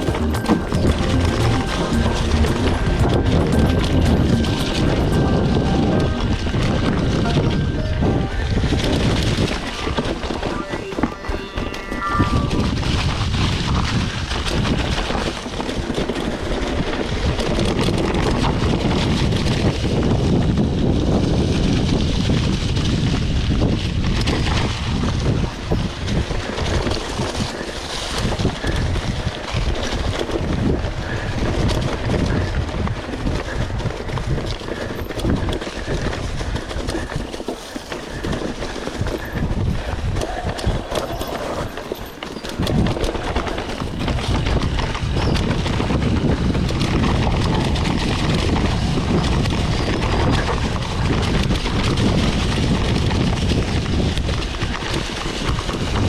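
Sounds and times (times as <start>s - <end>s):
bike knocking and rattling: 0.0s - 7.2s, 12.8s - 56.0s
low rumble: 0.0s - 14.0s
wind buffeting microphone: 0.0s - 56.0s.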